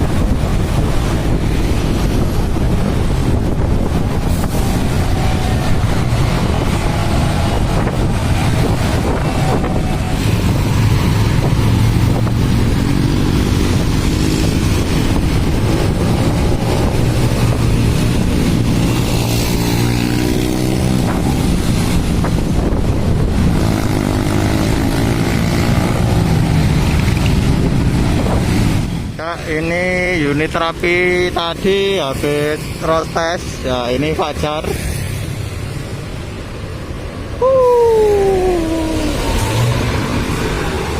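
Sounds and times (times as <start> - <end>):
wind noise on microphone: 0.0 - 29.2, 36.4 - 40.9
vehicle engine accelerating: 1.8 - 22.5, 23.2 - 28.9, 37.8 - 40.9.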